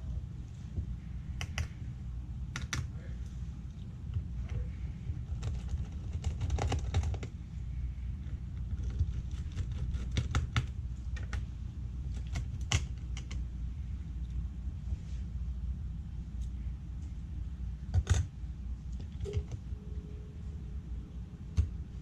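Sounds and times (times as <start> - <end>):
low hum: 0.0 - 22.0
hands clicking on laptop parts: 1.4 - 1.8, 2.5 - 2.9, 5.2 - 7.4, 8.6 - 11.5, 12.1 - 13.4, 17.9 - 18.3, 21.5 - 21.8.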